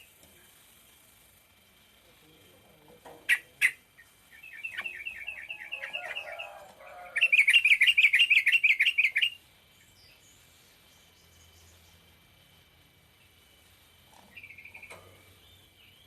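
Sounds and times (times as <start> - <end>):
bird singing with fast trill: 3.2 - 12.1, 14.3 - 16.0.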